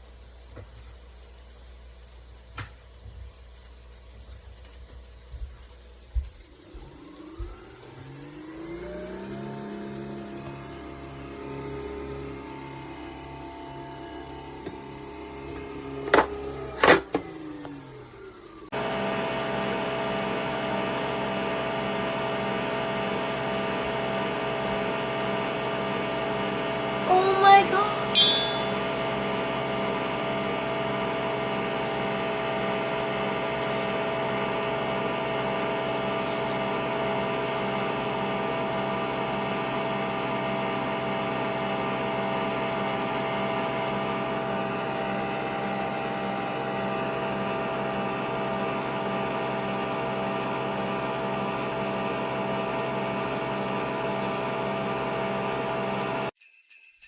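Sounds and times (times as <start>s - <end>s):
coffee machine whirring hum: 0.0s - 56.4s.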